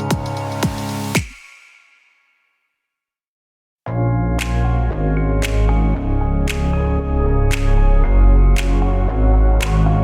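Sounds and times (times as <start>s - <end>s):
electronic music with heavy bass: 0.0s - 1.4s, 3.9s - 10.0s.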